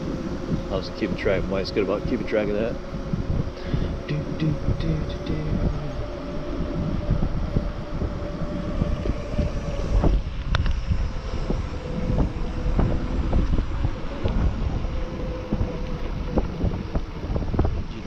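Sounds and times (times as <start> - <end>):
steady hum: 0.0 - 18.0
wind buffeting microphone: 0.0 - 18.0.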